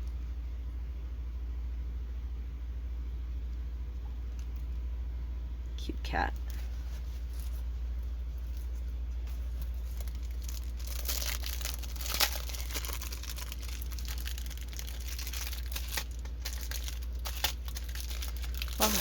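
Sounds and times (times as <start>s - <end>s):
steady low hum: 0.0s - 19.0s
packaging crinkling: 6.5s - 19.0s.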